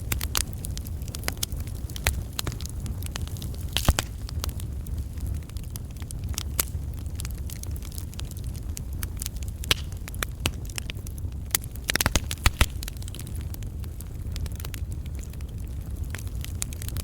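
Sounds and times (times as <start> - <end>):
flames rumbling: 0.0 - 17.0
wood popping and snapping: 3.8 - 4.2, 9.6 - 10.6, 11.5 - 13.2.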